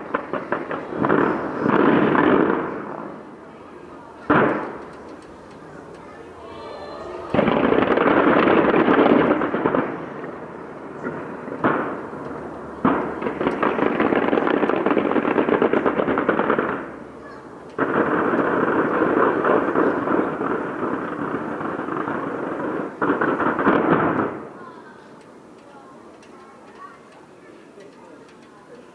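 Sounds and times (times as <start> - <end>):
fireworks crackling bangs: 0.0 - 28.9.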